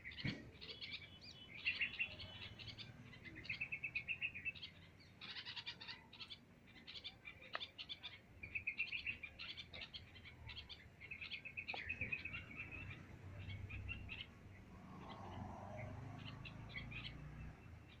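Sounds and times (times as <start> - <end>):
small birds chirping: 0.0 - 18.0.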